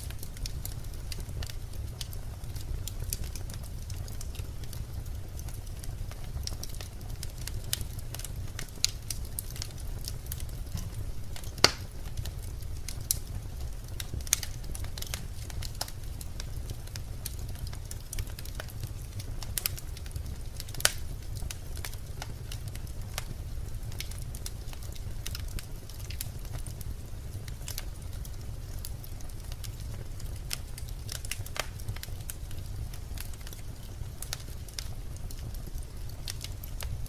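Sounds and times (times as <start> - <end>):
fire crackling and popping: 0.0 - 37.0
low rumble of flames: 0.0 - 37.0.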